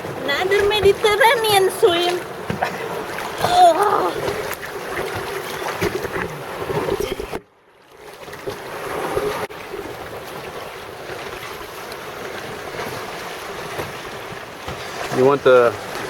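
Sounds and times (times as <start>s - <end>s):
water splashing around swimmer: 0.0s - 16.0s.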